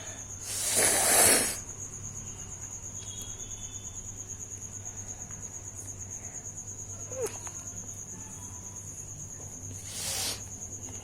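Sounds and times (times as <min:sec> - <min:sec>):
high-pitched pulsing insect trill: 0:00.0 - 0:11.0
person blowing their nose: 0:00.4 - 0:01.6, 0:09.8 - 0:10.4.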